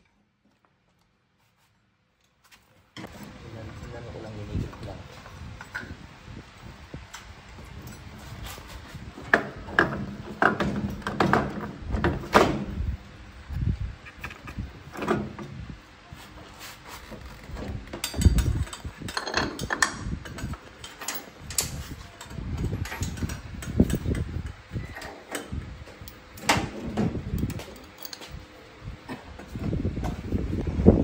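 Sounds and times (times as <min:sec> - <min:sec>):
knocks and clunks of parts: 0:09.2 - 0:12.8, 0:17.1 - 0:28.4
metal tools clinking: 0:18.0 - 0:24.1, 0:27.4 - 0:28.4.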